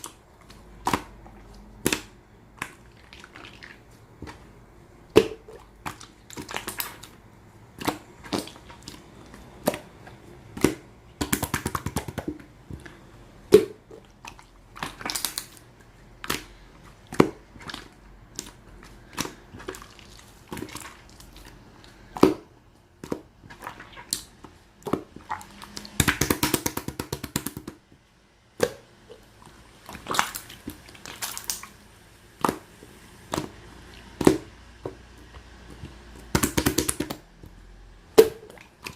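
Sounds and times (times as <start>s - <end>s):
slime rapid crackling: 5.6s - 12.5s, 14.2s - 21.6s, 25.0s - 27.7s, 35.9s - 37.2s.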